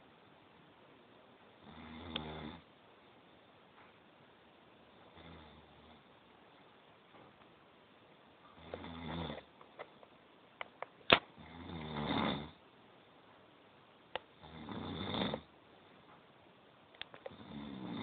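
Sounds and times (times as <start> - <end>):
person snoring: 14.4 - 15.5, 17.3 - 18.0.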